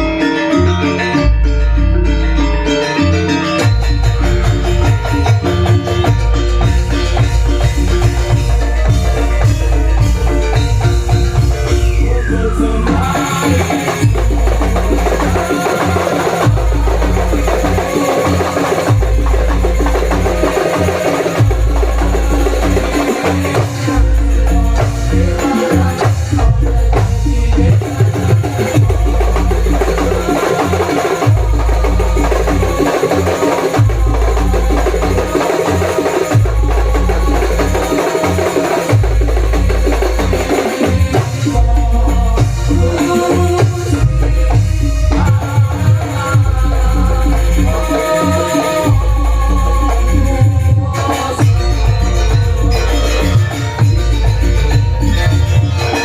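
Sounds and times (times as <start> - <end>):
gamelan music: 0.0 - 56.0
fast drum and percussion playing: 2.0 - 56.0.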